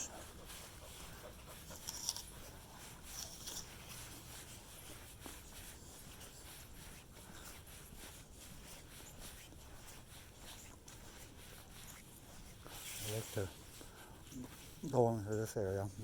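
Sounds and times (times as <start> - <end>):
brief brushing sounds: 1.5 - 13.6.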